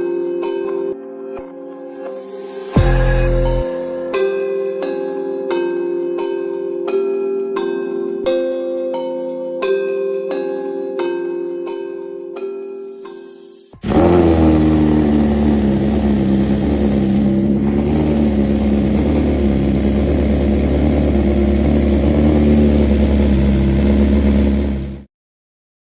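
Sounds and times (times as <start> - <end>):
motorcycle engine starting and idling: 13.8 - 25.1.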